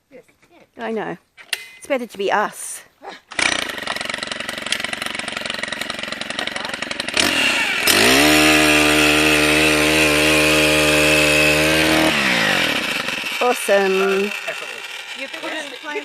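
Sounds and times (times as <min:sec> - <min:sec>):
small engine auger running: 0:03.3 - 0:16.0.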